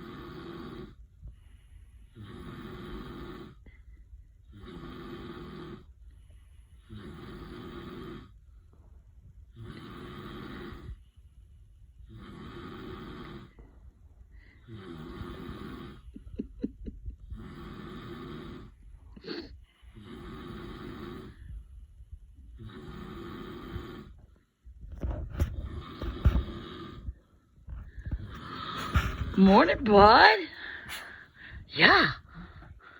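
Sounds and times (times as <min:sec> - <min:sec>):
man snoring: 0:00.0 - 0:01.0, 0:02.1 - 0:03.7, 0:04.5 - 0:05.9, 0:06.8 - 0:08.4, 0:09.5 - 0:11.0, 0:12.0 - 0:13.6, 0:14.6 - 0:21.5, 0:22.5 - 0:24.2, 0:25.4 - 0:27.2, 0:27.8 - 0:32.9.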